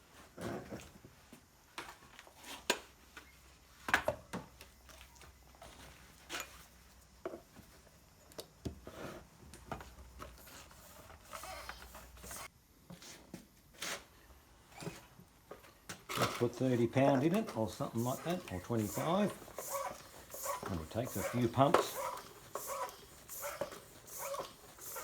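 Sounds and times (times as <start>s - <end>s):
hand tools clicking and knocking: 15.9s - 25.0s.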